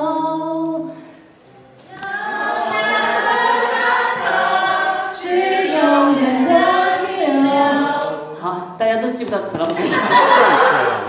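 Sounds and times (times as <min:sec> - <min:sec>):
group singing unaccompanied: 0:01.8 - 0:08.4.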